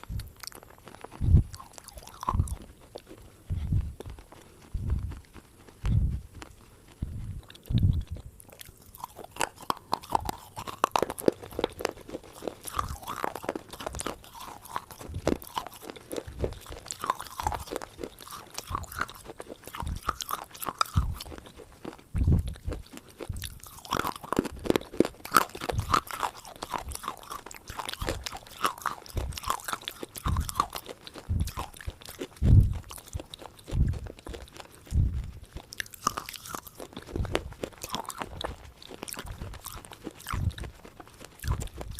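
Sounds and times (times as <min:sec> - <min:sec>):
person chewing crunchy food: 0:00.0 - 0:41.9.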